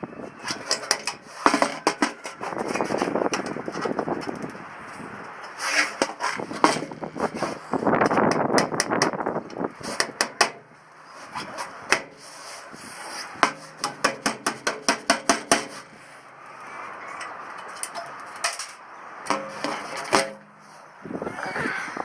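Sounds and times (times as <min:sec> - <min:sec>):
hammer blows on wooden shed: 0:05.8 - 0:10.8, 0:11.4 - 0:12.2, 0:13.3 - 0:16.0, 0:19.3 - 0:20.6.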